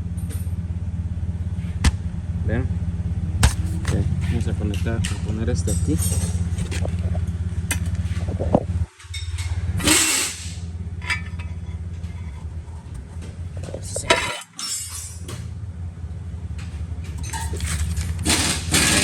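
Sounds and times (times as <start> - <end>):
van engine idling with misfire: 0.0 - 19.0
clattery handling noise: 6.1 - 8.2, 17.1 - 19.0.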